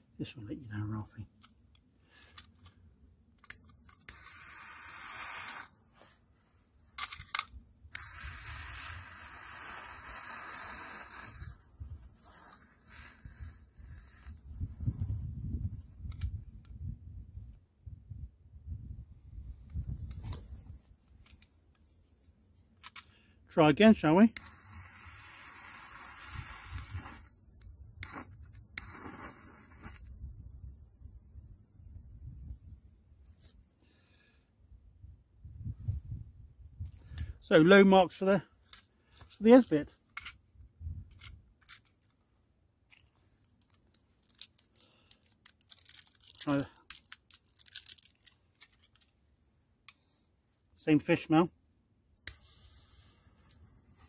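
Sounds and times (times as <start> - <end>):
gas hissing: 24.3 - 32.2, 52.2 - 54.0.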